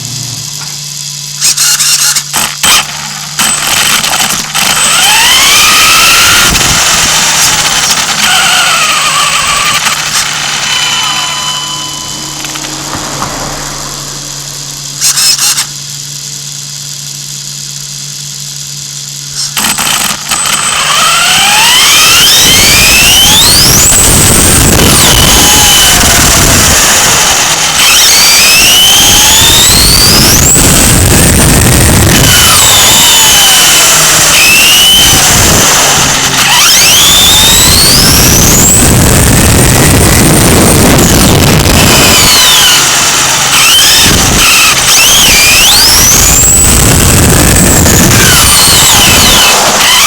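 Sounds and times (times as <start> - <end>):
short loud noise bursts: 0.0 - 17.2, 19.4 - 50.0
steady low hum: 0.0 - 20.9
electric motor whining: 0.0 - 50.0.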